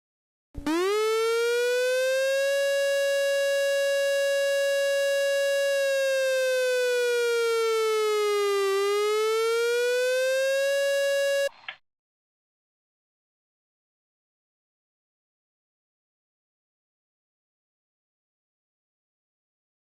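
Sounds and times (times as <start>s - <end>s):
emergency alert siren tone: 0.6s - 11.5s.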